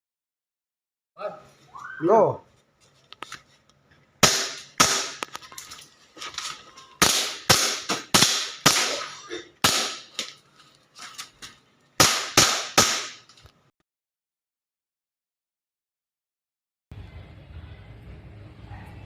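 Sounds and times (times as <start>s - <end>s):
airsoft gun shots: 4.2s - 5.2s, 7.0s - 10.2s, 12.0s - 13.2s.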